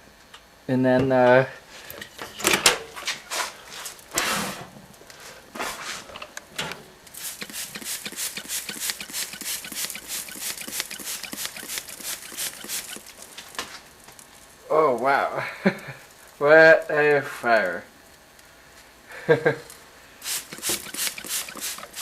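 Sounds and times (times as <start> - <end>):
burning plastic crackling and popping: 3.0 - 4.2, 7.0 - 18.8.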